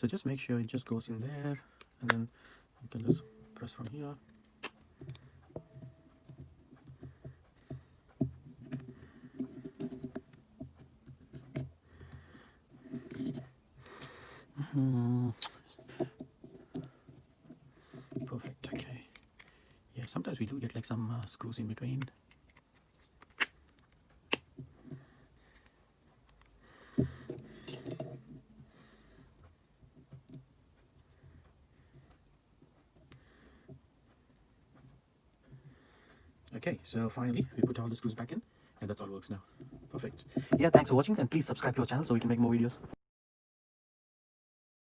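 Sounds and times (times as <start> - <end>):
handling noise: 1.9 - 13.8, 39.5 - 41.1.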